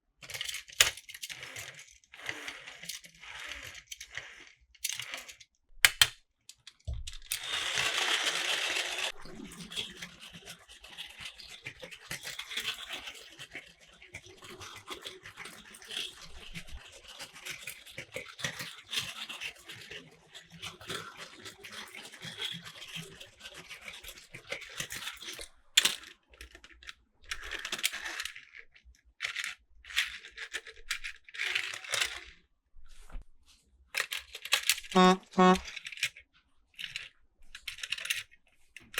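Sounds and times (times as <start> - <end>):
toy cars clattering on plastic track: 0.2 - 9.1, 9.7 - 32.4, 33.9 - 34.9, 35.7 - 38.9
toy train motor whirring: 0.4 - 6.1, 7.3 - 9.1, 34.5 - 35.6.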